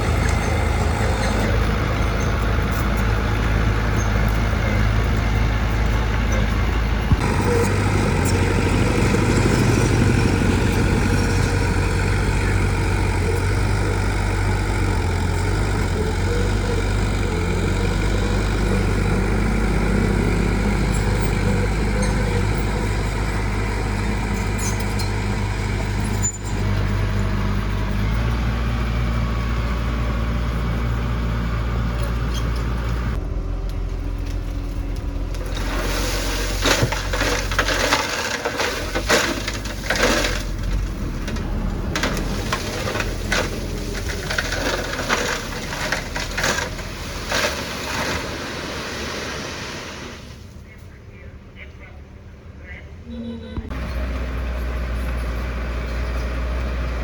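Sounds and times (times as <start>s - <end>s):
diesel machinery engine: 0.0s - 57.0s.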